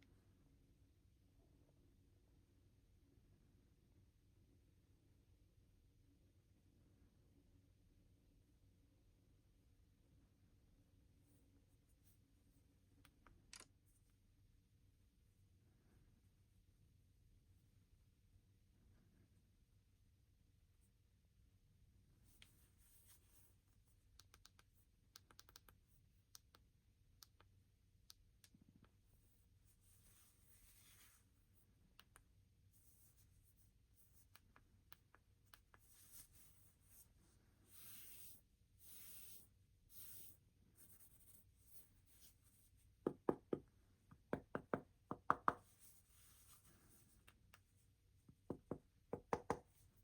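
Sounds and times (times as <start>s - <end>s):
soft rubbing: 29.1s - 31.8s, 35.5s - 43.0s, 45.5s - 48.4s.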